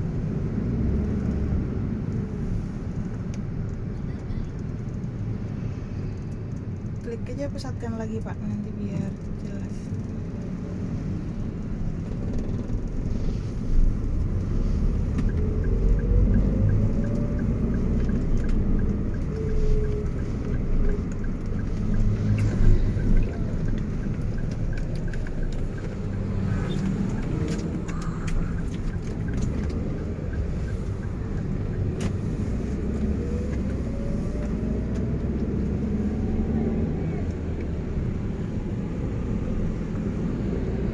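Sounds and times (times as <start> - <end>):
car road and engine rumble: 0.0 - 40.9
light regular ticking: 3.0 - 36.2
rising engine whine: 13.6 - 40.9.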